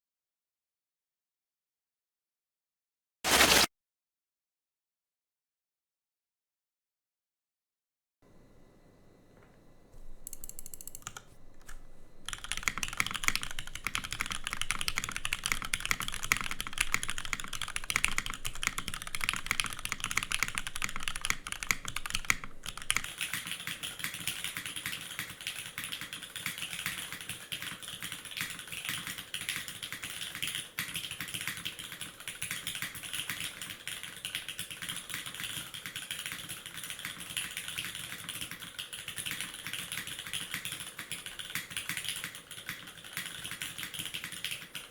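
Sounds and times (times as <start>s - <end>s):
mechanical keyboard typing: 10.2s - 44.9s.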